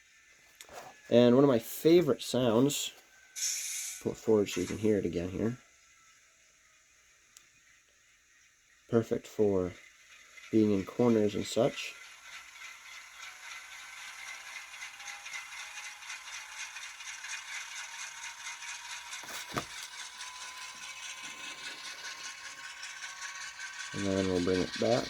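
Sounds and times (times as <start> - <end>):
model train rattle: 1.0 - 5.7, 8.4 - 25.0
faint wheel-flange squeal: 2.5 - 6.3, 8.9 - 25.0.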